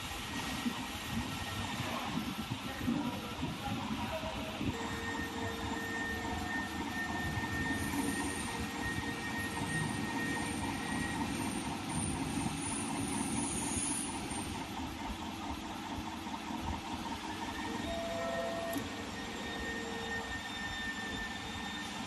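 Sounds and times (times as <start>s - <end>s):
laser engraver fans whirring: 0.0s - 22.0s
faint high steady tone: 4.0s - 12.2s, 17.2s - 22.0s.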